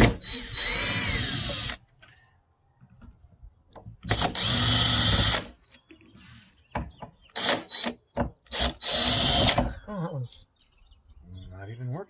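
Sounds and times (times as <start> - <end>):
power drill running: 0.0 - 1.8, 4.1 - 5.5, 7.4 - 9.7.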